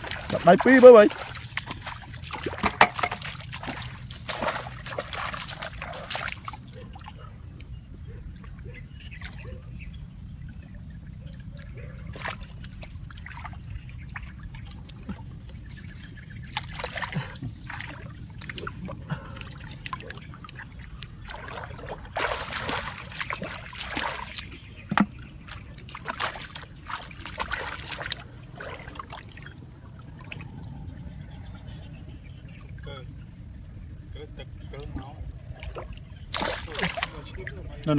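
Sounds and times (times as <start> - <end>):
water trickling and sloshing: 0.0 - 37.9
low rumble: 29.6 - 36.3.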